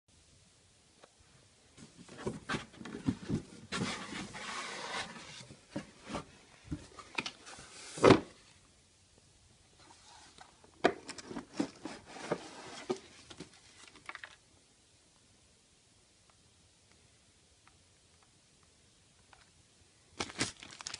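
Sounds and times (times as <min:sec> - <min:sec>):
sliding rustle: 0:01.8 - 0:08.2, 0:11.2 - 0:14.0
box packaging being handled: 0:01.8 - 0:08.4, 0:09.8 - 0:14.4, 0:20.2 - 0:20.9.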